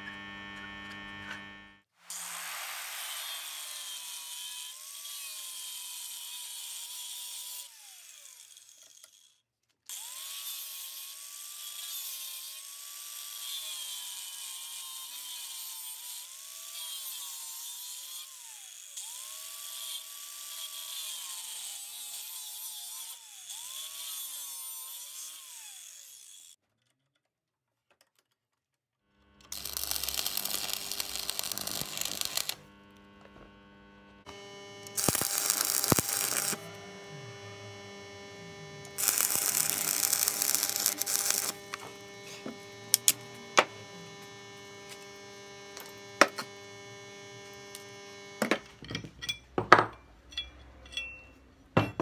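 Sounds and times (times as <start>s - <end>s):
power tool motor running: 0.0s - 9.2s, 29.2s - 48.9s
strong hiss: 2.1s - 3.7s.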